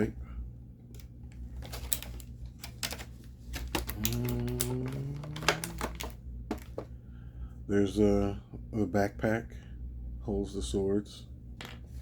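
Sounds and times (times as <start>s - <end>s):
low drawn-out vocal hum: 3.7s - 6.2s.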